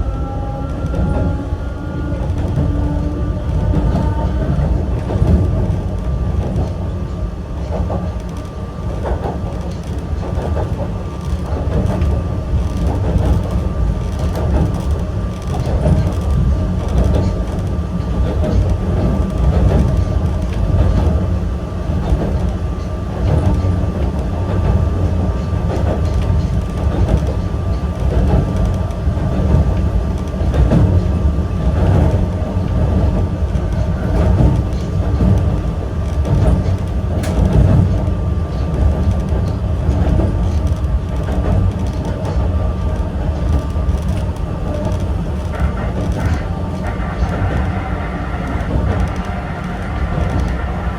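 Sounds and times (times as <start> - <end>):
train wheels rumbling on rail: 0.0 - 50.9.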